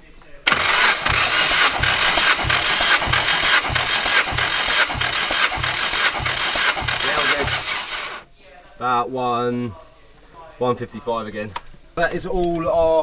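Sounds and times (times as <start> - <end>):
starter motor cranking engine: 0.0 - 8.3.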